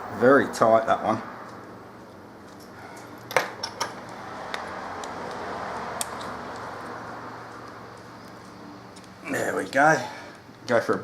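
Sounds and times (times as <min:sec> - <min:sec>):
screwdrivers clinking on metal: 0:03.3 - 0:04.1.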